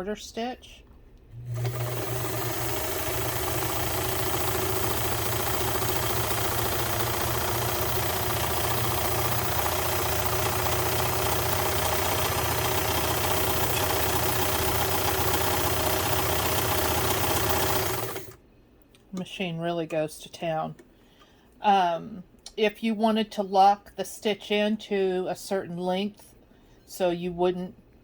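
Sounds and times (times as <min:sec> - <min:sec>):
sewing machine running fast: 0:01.4 - 0:18.4.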